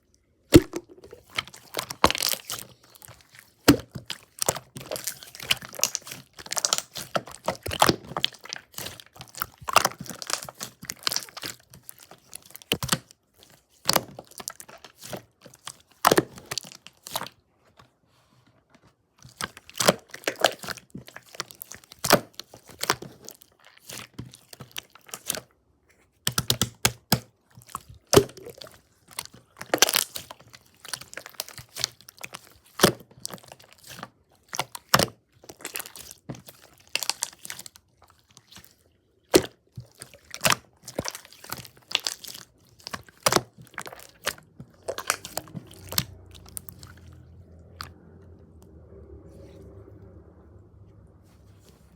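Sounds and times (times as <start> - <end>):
slime crackling and clicking: 0.5 - 13.1, 26.3 - 36.1, 39.3 - 47.1.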